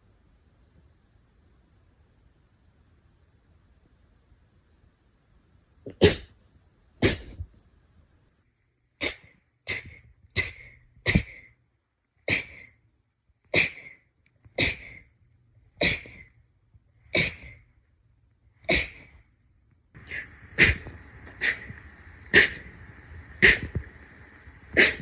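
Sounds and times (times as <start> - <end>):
person sneezing: 5.9 - 6.3, 7.0 - 7.4, 9.0 - 11.5, 12.3 - 12.7, 13.6 - 14.0, 14.6 - 15.0, 15.8 - 16.3, 17.2 - 17.6, 18.6 - 19.2, 20.0 - 21.7, 22.3 - 22.7, 23.4 - 23.8, 24.7 - 25.0.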